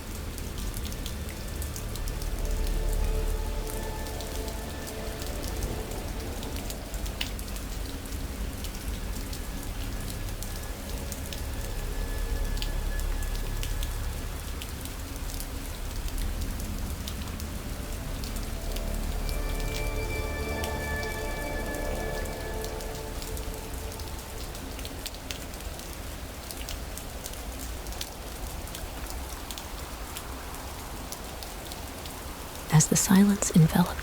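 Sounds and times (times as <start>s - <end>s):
raindrops ticking: 0.0s - 34.0s
steady rain: 0.0s - 34.0s
faint sustained musical tones: 0.6s - 25.8s.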